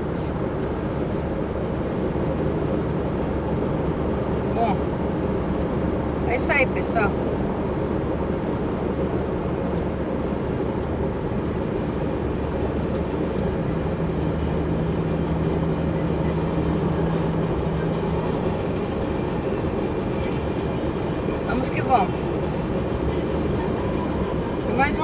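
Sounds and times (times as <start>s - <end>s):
pickup engine and road noise: 0.0s - 25.0s.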